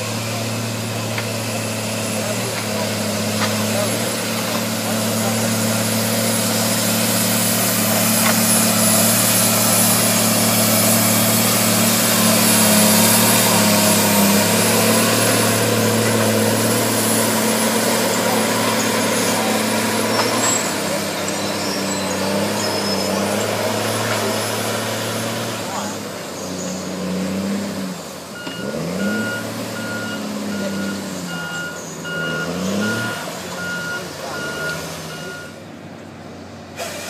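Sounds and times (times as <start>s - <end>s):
loud hiss: 0.0s - 21.0s, 36.8s - 37.0s
large engine running steadily: 0.0s - 37.0s.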